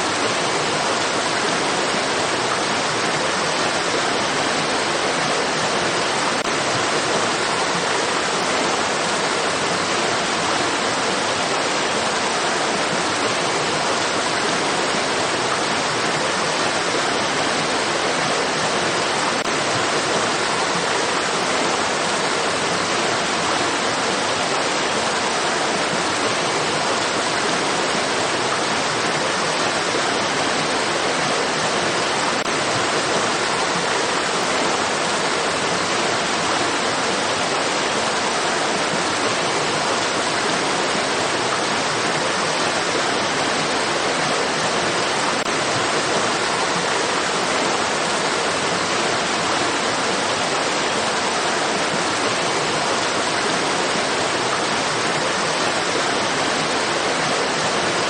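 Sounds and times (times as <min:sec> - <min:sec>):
stream water rushing: 0:00.0 - 0:58.0.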